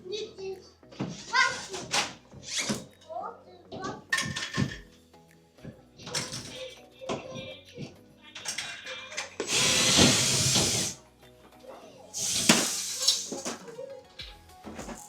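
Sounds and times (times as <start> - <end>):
power drill running: 9.4 - 11.0.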